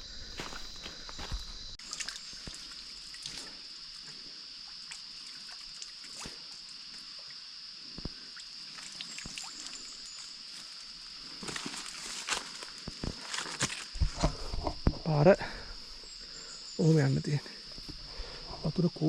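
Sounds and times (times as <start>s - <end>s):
insects droning: 0.0s - 19.0s
rustles: 8.7s - 14.8s.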